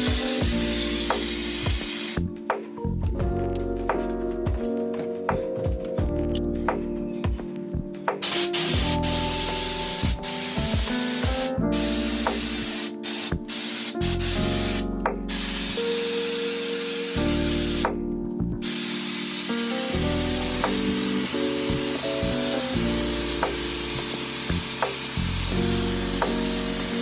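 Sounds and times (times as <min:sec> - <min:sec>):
spray gun hissing: 0:00.0 - 0:02.3, 0:08.2 - 0:18.0, 0:18.6 - 0:27.0
background music: 0:00.0 - 0:27.0.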